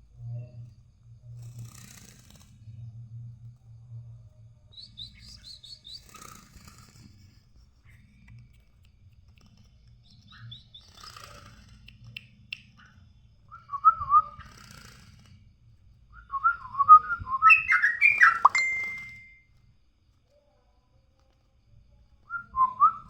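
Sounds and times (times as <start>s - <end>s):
bird chirping and warbling: 16.3s - 19.4s.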